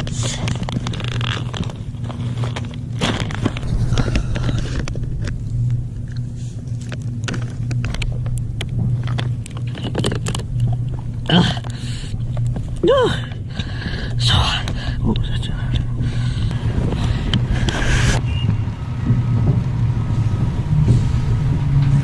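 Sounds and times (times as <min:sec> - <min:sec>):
handling clicks and rustling: 0:00.0 - 0:13.9
low mechanical hum: 0:00.0 - 0:22.0.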